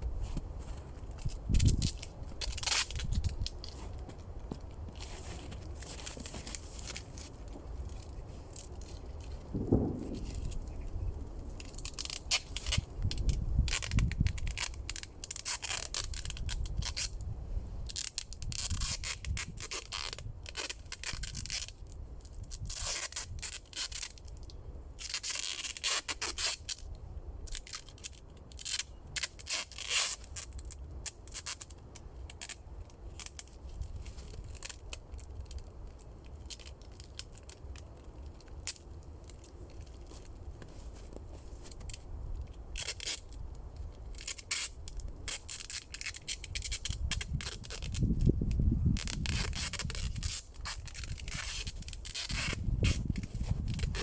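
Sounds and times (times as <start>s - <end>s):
dry reeds crackling and rustling: 0.0s - 17.2s, 17.8s - 54.0s
reeds ripping: 0.3s - 17.1s, 32.3s - 54.0s.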